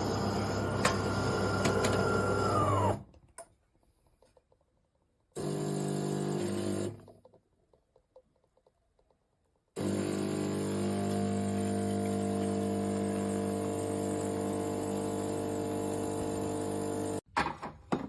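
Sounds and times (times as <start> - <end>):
coffee machine humming: 0.0 - 3.0, 5.4 - 7.0, 9.8 - 17.2.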